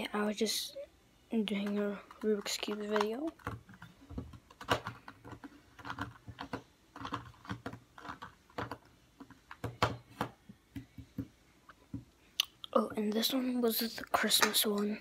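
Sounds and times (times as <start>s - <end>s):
plastic puzzle cube clicking: 1.6s - 10.3s.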